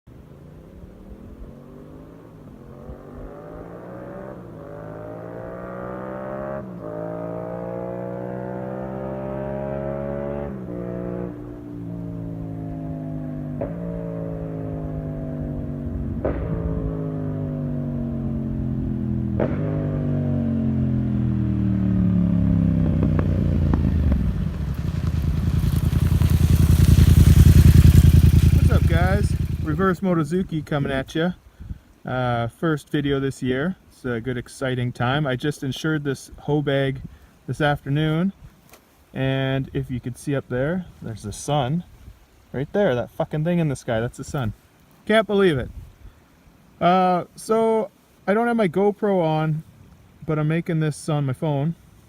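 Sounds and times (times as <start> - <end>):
motorcycle engine accelerating: 0.4 - 30.0
motorcycle engine idling: 19.5 - 30.0.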